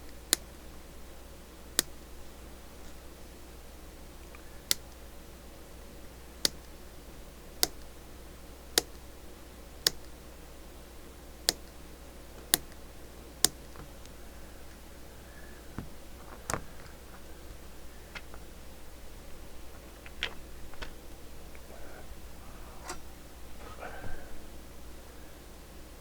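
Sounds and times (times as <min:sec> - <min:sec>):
faint steady hum: 0:00.0 - 0:26.0
sharp single clicks: 0:04.2 - 0:05.0, 0:07.6 - 0:08.0, 0:09.8 - 0:10.2.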